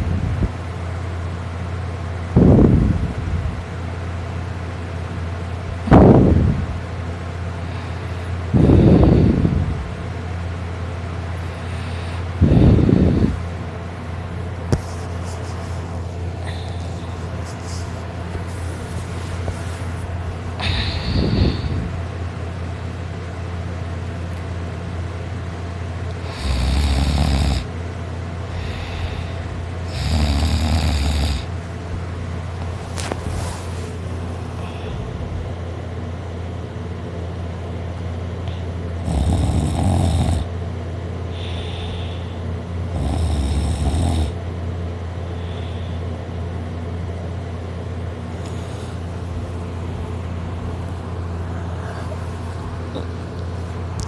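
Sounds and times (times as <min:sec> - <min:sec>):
steady low hum: 0:00.0 - 0:54.0
person snoring loudly: 0:20.6 - 0:21.9, 0:26.2 - 0:27.7, 0:28.5 - 0:31.5, 0:39.0 - 0:40.5, 0:42.9 - 0:44.4.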